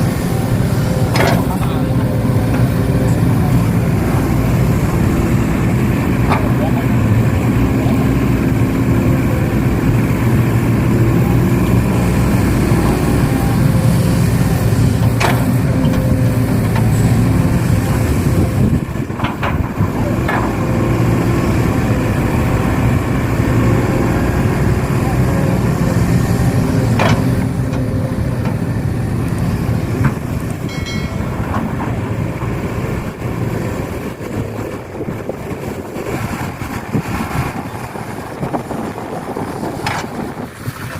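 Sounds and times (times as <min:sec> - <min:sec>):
heavy equipment engine running: 0:00.0 - 0:40.9
sharp metal clanks: 0:30.7 - 0:31.9.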